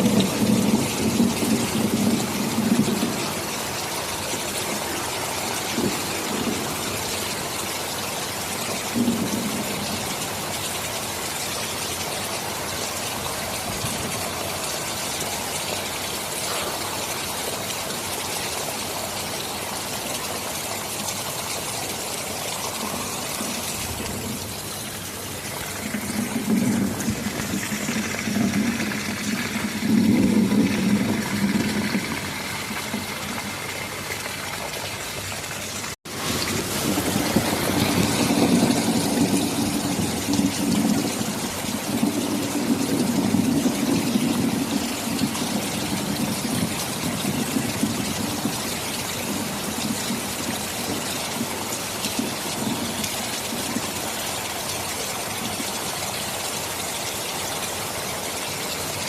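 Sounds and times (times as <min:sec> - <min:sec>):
low rolling thunder: 0:00.0 - 0:10.7, 0:22.4 - 0:34.5, 0:36.1 - 0:53.8
heavy rain hissing: 0:00.0 - 0:59.0.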